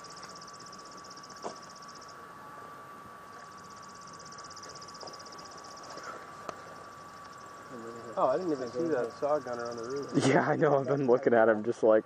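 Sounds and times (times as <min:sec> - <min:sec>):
faint steady whine: 0:00.0 - 0:12.0
insects trilling: 0:00.0 - 0:12.0.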